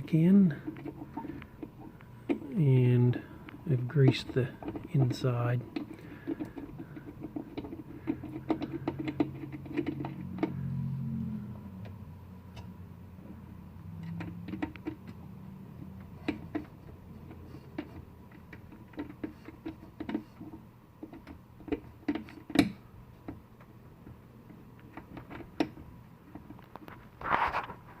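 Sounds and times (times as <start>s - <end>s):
faint low hum: 0.0s - 28.0s
small metal clicks and knocks: 3.2s - 10.8s, 15.8s - 27.1s.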